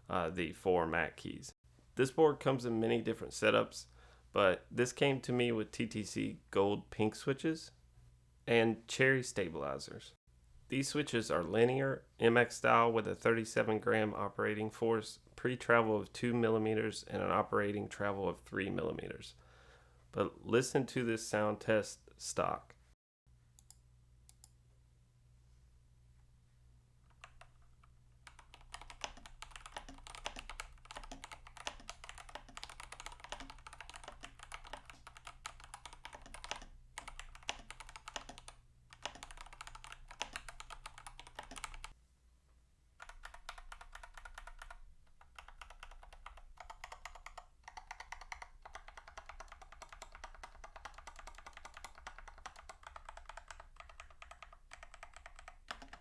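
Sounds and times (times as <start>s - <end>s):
mechanical keyboard typing: 27.1s - 42.0s, 43.0s - 56.0s.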